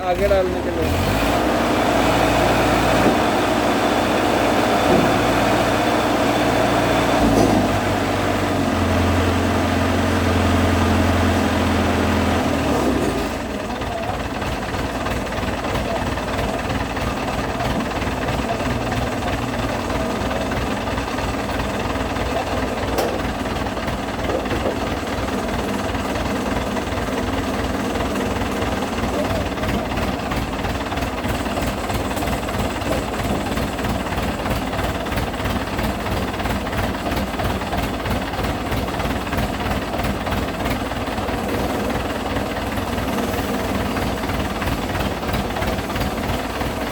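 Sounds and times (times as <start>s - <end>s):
low motor hum: 0.0s - 46.9s
rapid mechanical rattle: 13.2s - 46.9s.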